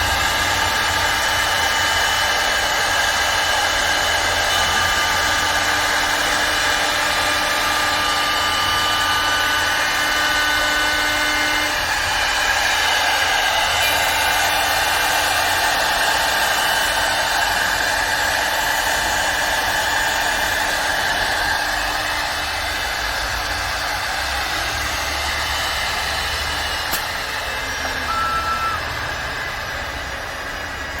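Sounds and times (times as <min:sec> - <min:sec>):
lathe machine whine and cutting: 0:00.0 - 0:31.0
sharp click: 0:26.9 - 0:27.2
short high beep: 0:27.8 - 0:28.9.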